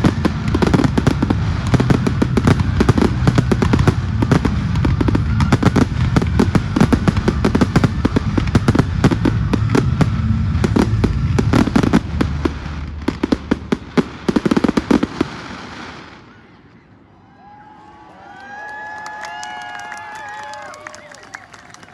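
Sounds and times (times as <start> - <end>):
low rumble: 0.0 - 15.7
fireworks bangs and crackles: 0.0 - 17.0.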